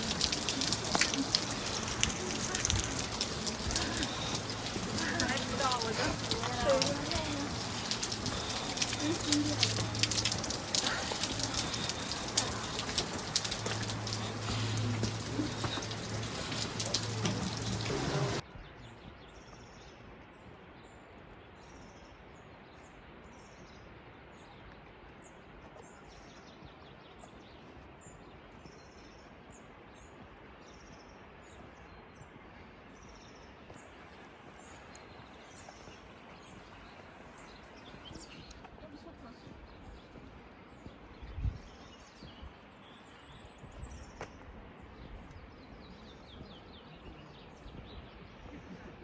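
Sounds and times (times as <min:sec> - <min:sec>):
hiss of falling water: 0:00.0 - 0:18.4.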